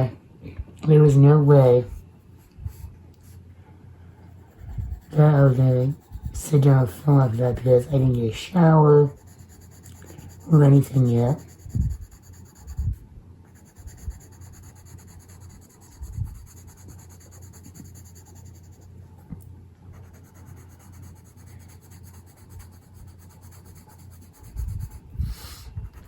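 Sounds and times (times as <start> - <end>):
pencil scratching on paper: 4.3 - 18.9, 19.9 - 26.0.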